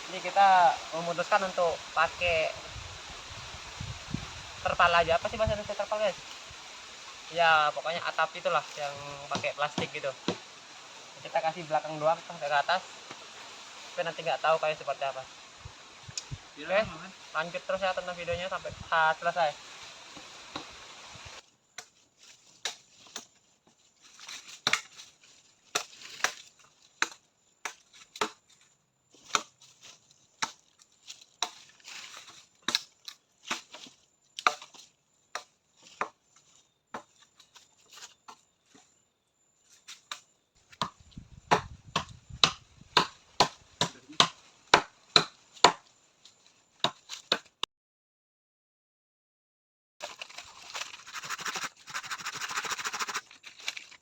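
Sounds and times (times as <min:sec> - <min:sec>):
sharp blows on wood: 0:40.7 - 0:45.8, 0:51.1 - 0:53.3.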